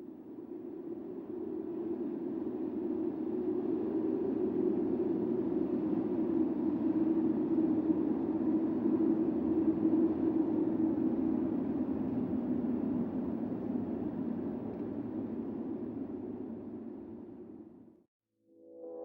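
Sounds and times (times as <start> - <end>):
blizzard wind rushing: 0.5 - 17.6.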